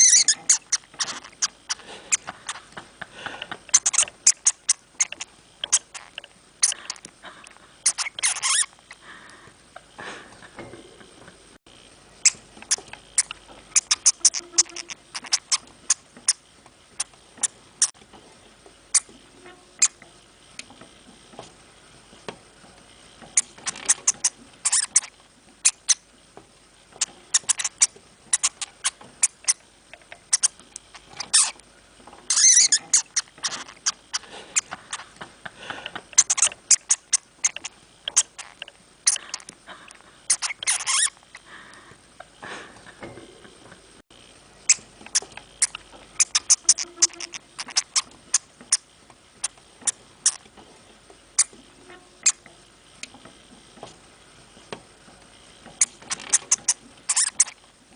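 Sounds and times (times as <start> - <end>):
hamster clicks and scratches: 55.7 - 57.6.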